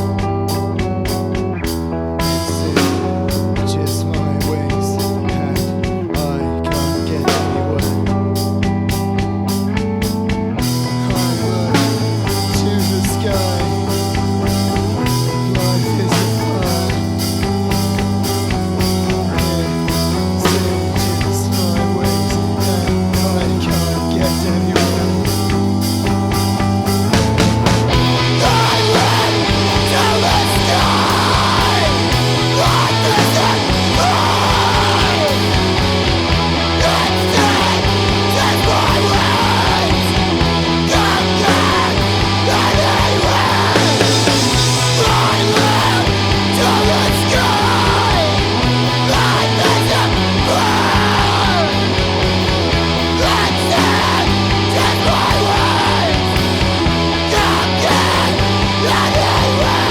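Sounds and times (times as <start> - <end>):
heavy rock music: 0.0 - 59.9
shouted vocals: 9.8 - 59.9.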